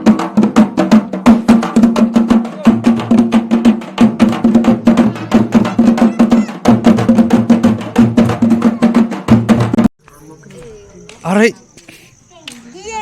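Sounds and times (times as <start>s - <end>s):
fast dense percussion: 0.0s - 9.9s.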